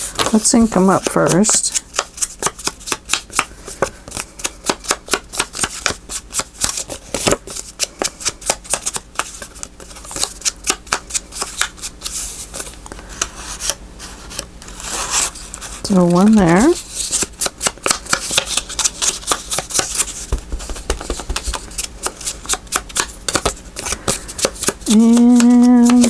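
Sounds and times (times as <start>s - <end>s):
ink pad tapping paper cards: 15.9s - 16.8s, 17.6s - 26.0s.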